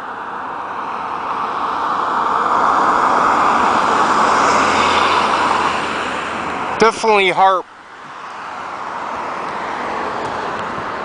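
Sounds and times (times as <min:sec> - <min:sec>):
airplane passing overhead: 0:00.8 - 0:07.4.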